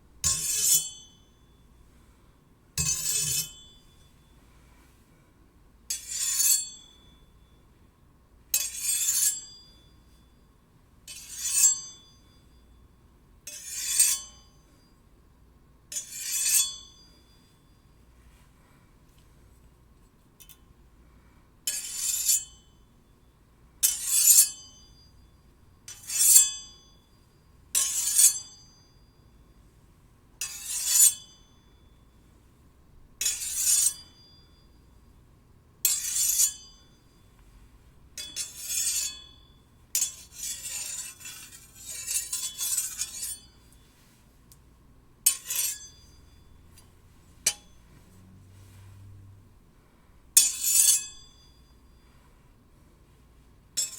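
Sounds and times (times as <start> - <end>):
steel blades ringing: 40.0 - 43.6, 45.3 - 46.5, 50.4 - 51.7.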